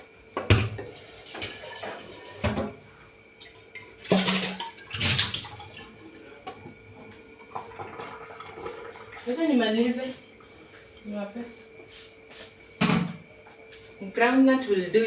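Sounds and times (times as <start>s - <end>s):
faint steady hum: 0.0s - 15.0s
kitchen knocks and clatters: 0.4s - 2.8s, 12.8s - 13.3s
water sloshing: 3.4s - 9.4s.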